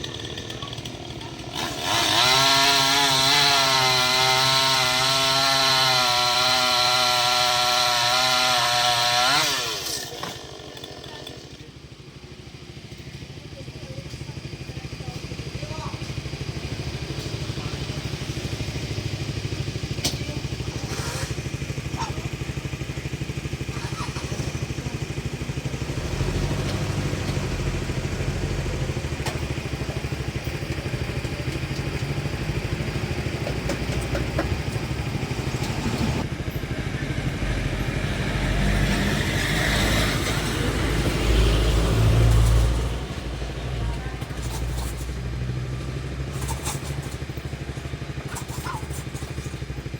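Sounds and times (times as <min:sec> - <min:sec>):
chainsaw engine running: 0:00.0 - 0:49.9.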